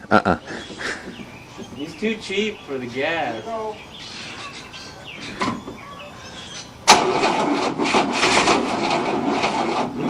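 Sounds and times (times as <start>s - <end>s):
engine cranking slowly: 6.9s - 10.0s.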